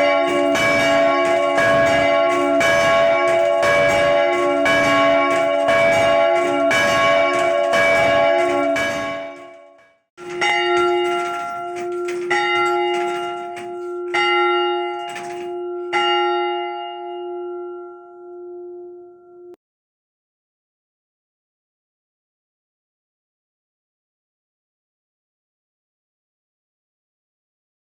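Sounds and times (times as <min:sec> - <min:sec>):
church bells ringing: 0:00.0 - 0:19.6.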